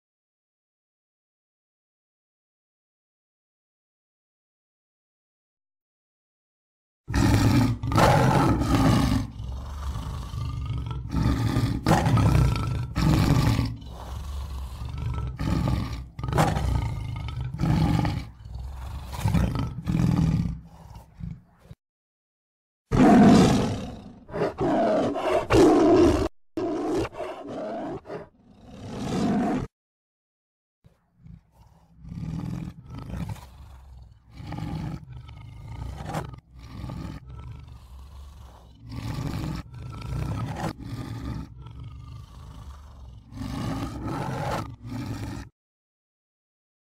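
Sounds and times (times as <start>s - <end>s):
tiger roaring and growling: 7.1s - 21.8s, 22.9s - 29.7s, 30.9s - 45.5s.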